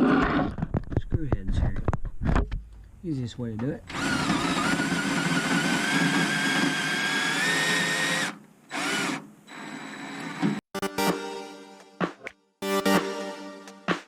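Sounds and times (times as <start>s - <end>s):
power drill whining: 3.9s - 10.6s.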